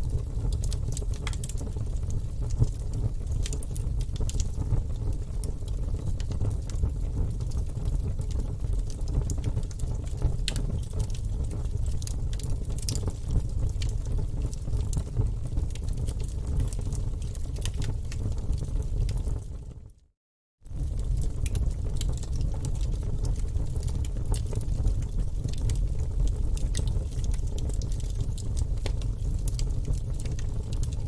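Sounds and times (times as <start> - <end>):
fire flames rumbling: 0.0 - 19.6, 20.7 - 31.0
logs crackling and popping: 0.2 - 2.0, 2.8 - 4.2, 10.1 - 18.6, 20.8 - 31.0.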